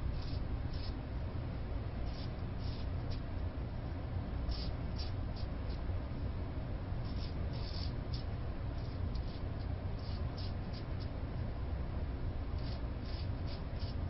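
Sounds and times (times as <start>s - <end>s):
razor scraping stubble: 0.0s - 1.0s, 2.0s - 3.2s, 4.5s - 5.8s, 7.0s - 11.1s, 12.6s - 14.0s
steady low hum: 0.0s - 14.0s.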